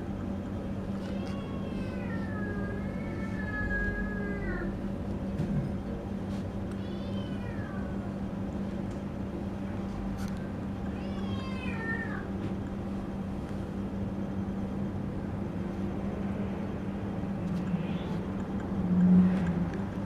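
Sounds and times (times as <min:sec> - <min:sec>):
cat meowing: 0:01.0 - 0:04.8, 0:06.8 - 0:08.1, 0:10.9 - 0:12.3, 0:17.7 - 0:18.2.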